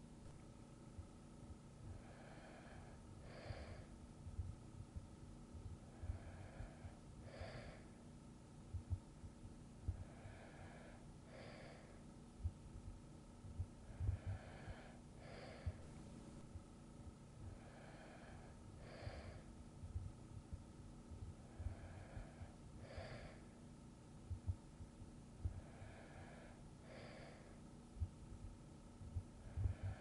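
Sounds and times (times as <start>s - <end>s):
person breathing softly in sleep: 1.8s - 4.5s, 5.6s - 8.1s, 9.8s - 12.6s, 13.6s - 16.5s, 17.4s - 20.1s, 21.2s - 23.6s, 25.4s - 28.1s, 29.4s - 30.0s
faint low thuds: 4.2s - 6.8s, 24.3s - 25.7s.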